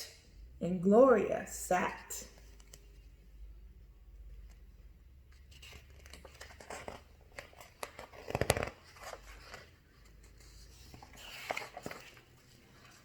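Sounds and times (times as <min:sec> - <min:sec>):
paper page rustling and turning: 0:04.4 - 0:13.0.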